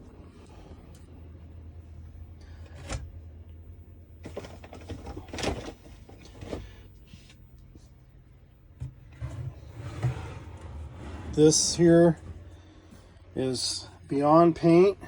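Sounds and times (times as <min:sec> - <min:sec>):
low steady hum: 0:00.0 - 0:15.0
knocks and rattles of handling: 0:04.2 - 0:06.8.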